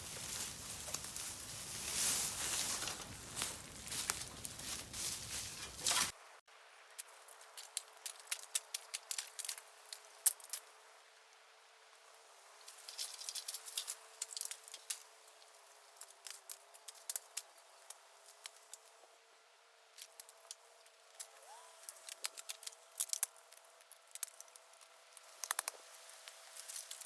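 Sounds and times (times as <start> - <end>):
bonfire crackling and popping: 0.0 - 6.2, 6.9 - 10.6, 21.9 - 27.0.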